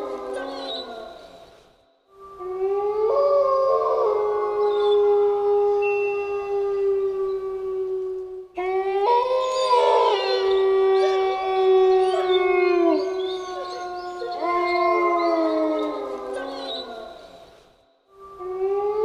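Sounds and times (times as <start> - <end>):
wolves howling: 2.3 - 17.4.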